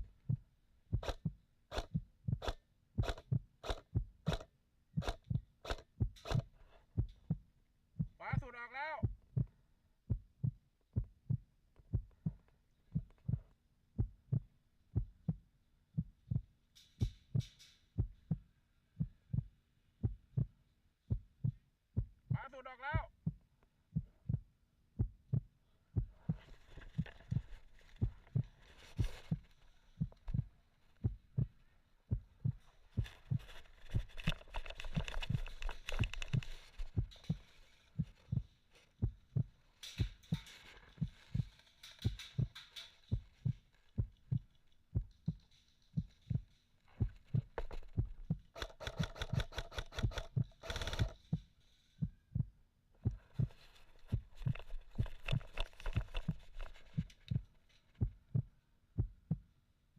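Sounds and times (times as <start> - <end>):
rapid sharp clicks: 1.0 - 6.5, 33.0 - 38.2, 39.8 - 51.4.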